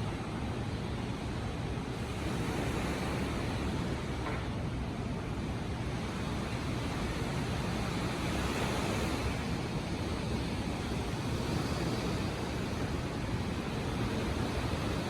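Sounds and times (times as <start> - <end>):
ocean surf breaking: 0.0 - 15.0.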